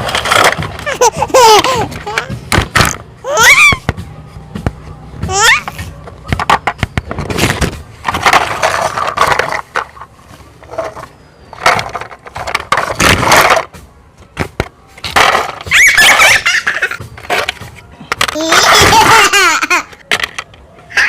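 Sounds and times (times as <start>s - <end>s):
rough clattering and crashing: 0.0s - 1.1s, 6.3s - 13.8s, 14.4s - 19.3s.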